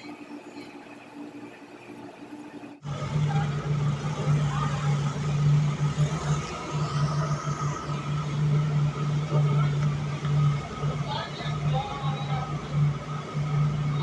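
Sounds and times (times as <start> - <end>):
engine humming: 2.8 - 14.0
machinery noise: 2.8 - 14.0.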